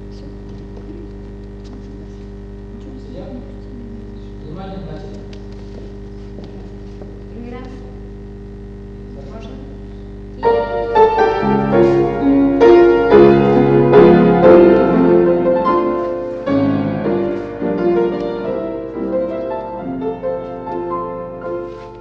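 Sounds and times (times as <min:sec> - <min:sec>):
piano playing chords and melody: 0:10.4 - 0:22.0.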